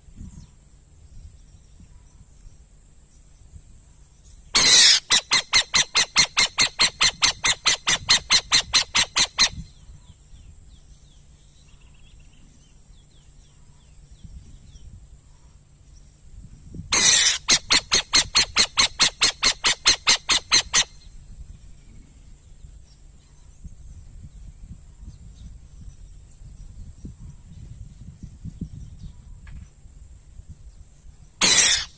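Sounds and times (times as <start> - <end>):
owl screech: 4.6 - 9.6, 16.9 - 21.0, 31.4 - 31.9
owl rasping calls: 4.6 - 9.8, 16.9 - 21.1, 31.4 - 31.9.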